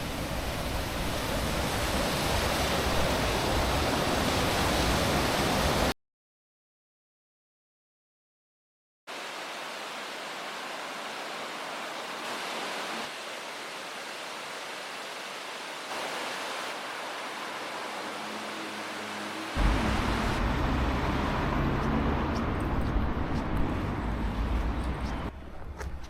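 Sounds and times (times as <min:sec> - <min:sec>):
steady rushing noise: 0:09.1 - 0:25.4.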